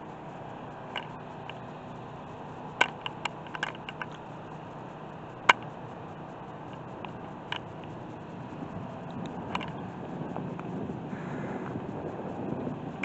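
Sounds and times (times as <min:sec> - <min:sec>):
steady low hiss: 0:00.0 - 0:13.0
sharp clicks and taps: 0:02.8 - 0:04.2, 0:05.4 - 0:05.8, 0:06.7 - 0:08.0, 0:09.1 - 0:09.8.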